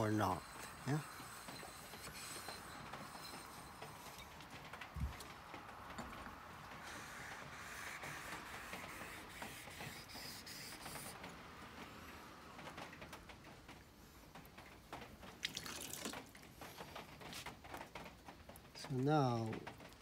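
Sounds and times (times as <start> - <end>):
blade scraping on wet whetstone: 0.0 - 4.3
water drips: 15.3 - 16.5.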